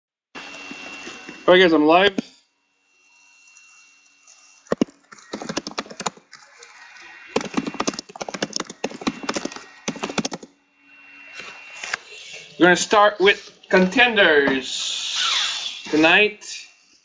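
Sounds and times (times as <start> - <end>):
card packaging clicking and crackling: 4.6 - 10.4.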